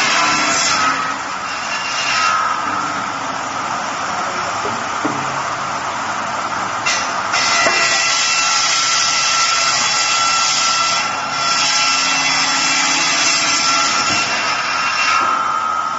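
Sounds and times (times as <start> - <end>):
circular saw cutting wood: 0.0 - 2.8, 6.8 - 15.8.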